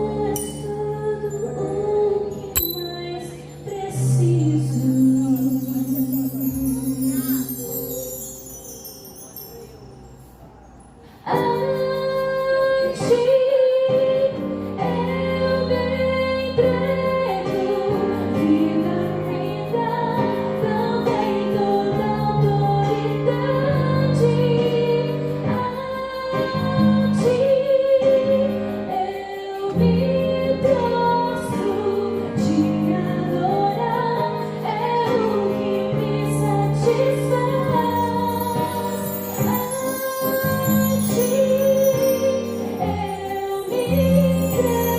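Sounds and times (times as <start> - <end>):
woman singing: 0.0 - 9.5, 11.2 - 44.9
keyboard chords: 0.0 - 10.8, 30.2 - 44.9.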